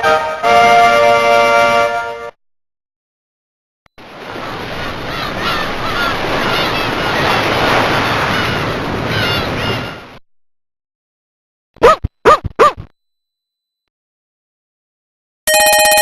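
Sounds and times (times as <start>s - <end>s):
ocean surf: 4.0s - 10.2s
bird calls: 4.2s - 10.2s.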